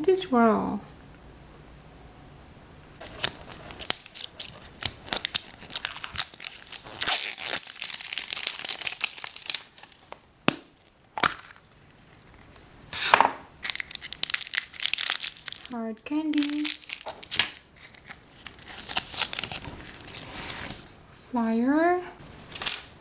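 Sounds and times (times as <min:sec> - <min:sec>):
plastic packaging crinkling and tearing: 0:03.0 - 0:10.2, 0:10.8 - 0:12.7, 0:13.6 - 0:20.9, 0:22.3 - 0:23.0.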